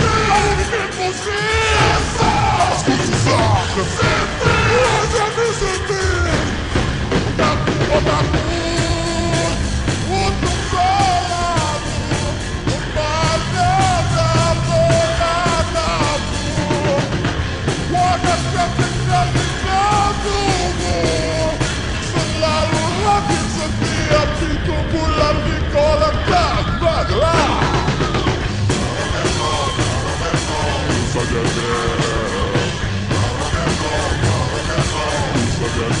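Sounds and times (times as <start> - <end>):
rock band with singing: 0.0 - 36.0.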